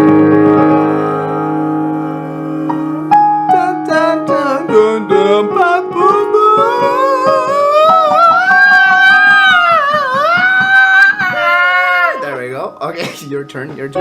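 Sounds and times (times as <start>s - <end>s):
piano chord and notes: 0.0s - 9.9s
person singing vocal scale: 0.9s - 13.2s.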